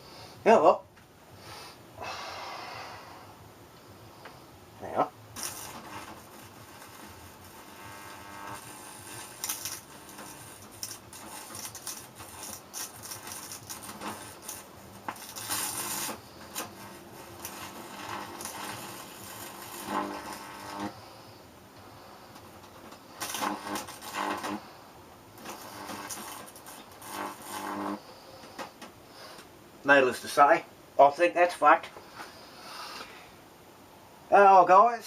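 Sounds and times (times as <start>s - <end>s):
faint electrical hum: 0.0s - 35.0s
electrical crackling and sizzling: 4.8s - 30.6s.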